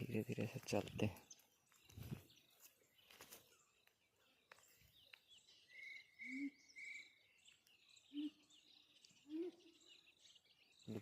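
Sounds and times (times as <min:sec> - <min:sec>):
whistled bird notes: 0:04.7 - 0:11.0.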